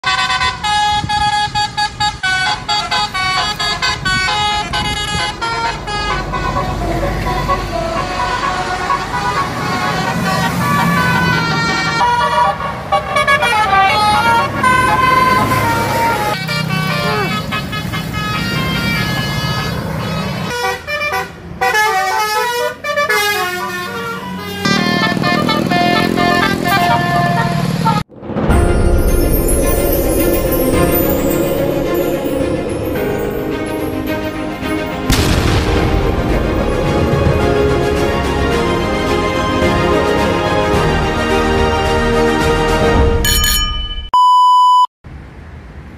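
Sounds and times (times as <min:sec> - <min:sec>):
musical bus air horn: 0:00.0 - 0:28.1, 0:29.4 - 0:43.2
traffic noise: 0:00.0 - 0:43.7, 0:45.0 - 0:45.9
low vehicle rumble: 0:24.8 - 0:42.4.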